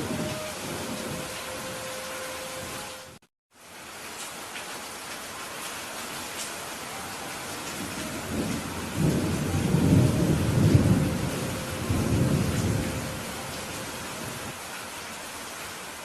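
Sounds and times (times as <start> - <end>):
rain on a roof: 0.0 - 16.0
thunder rumble: 7.4 - 14.6.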